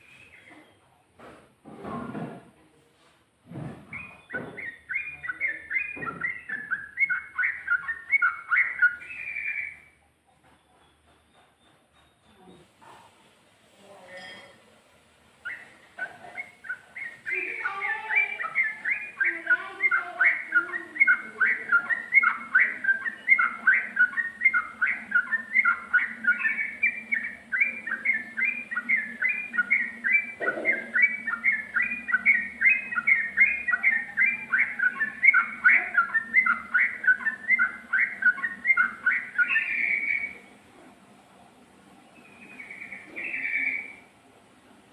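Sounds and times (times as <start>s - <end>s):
faint steady hum: 0.0s - 11.5s, 12.2s - 44.9s
bird singing whistled notes: 3.9s - 10.0s, 15.4s - 40.5s, 42.2s - 44.1s.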